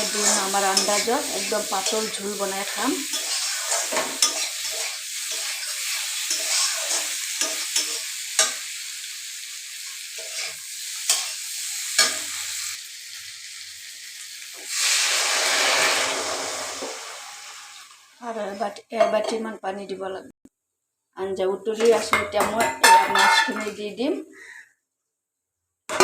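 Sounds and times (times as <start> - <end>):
vegetables sizzling in a pan: 0.0 - 18.9
water poured into hot pan: 2.9 - 18.2.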